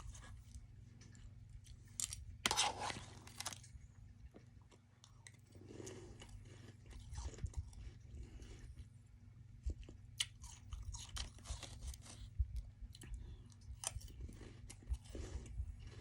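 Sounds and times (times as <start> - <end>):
crackling and chewing: 0.0 - 16.0
crunching bite of ice: 1.6 - 3.7.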